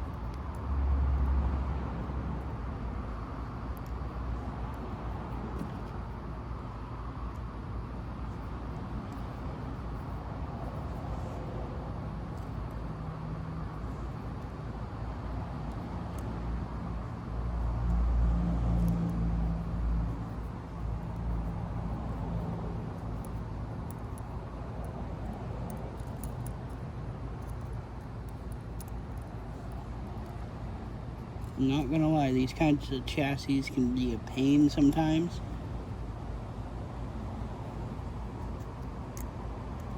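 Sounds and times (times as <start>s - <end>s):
low hum and rumble: 0.0s - 39.9s
small parts clicking: 25.6s - 26.8s, 27.4s - 30.4s, 38.4s - 39.9s.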